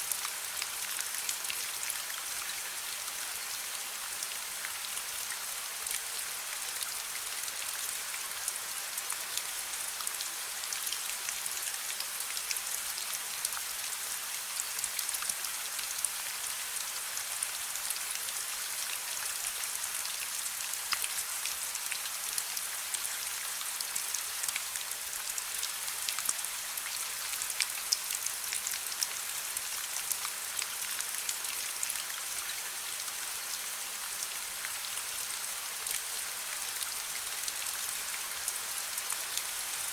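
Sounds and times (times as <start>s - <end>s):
rain hiss: 17.0s - 39.9s.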